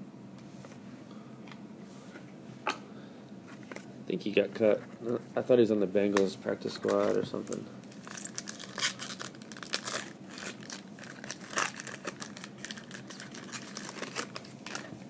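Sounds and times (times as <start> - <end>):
cards being handled: 6.1 - 9.2
foil wrapper crinkling: 6.8 - 15.0.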